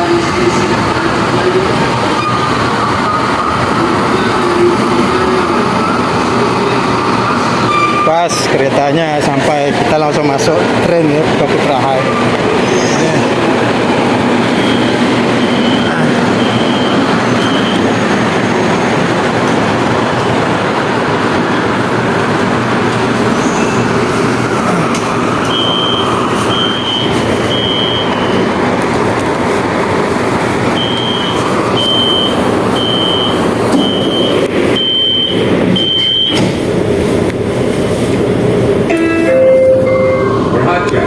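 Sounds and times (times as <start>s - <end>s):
train rumbling: 0.0s - 41.0s
short high beeps: 38.9s - 40.6s.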